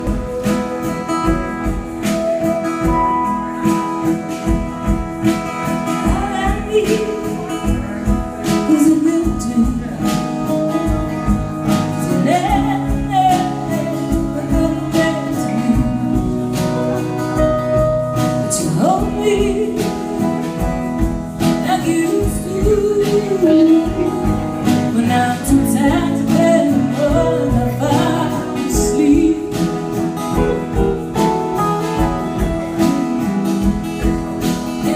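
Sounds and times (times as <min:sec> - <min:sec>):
strummed acoustic guitar: 0:00.0 - 0:34.9
person singing: 0:05.2 - 0:20.6, 0:21.4 - 0:33.2.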